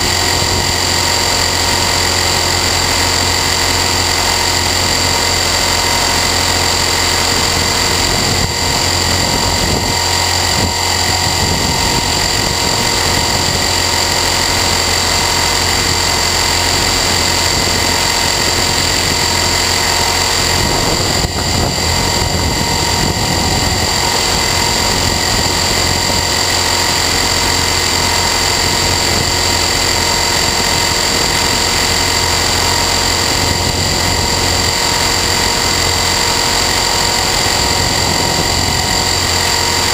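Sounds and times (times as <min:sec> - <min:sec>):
rc helicopter whine and buzz: 0:00.0 - 0:39.9.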